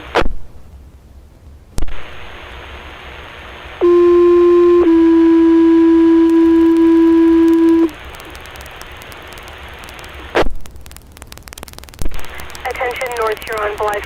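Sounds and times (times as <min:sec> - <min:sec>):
radio hiss: 0:01.8 - 0:04.1, 0:12.1 - 0:14.0
radio crackle: 0:01.8 - 0:14.0
two-tone paging tones over radio: 0:03.8 - 0:07.9, 0:12.6 - 0:14.0.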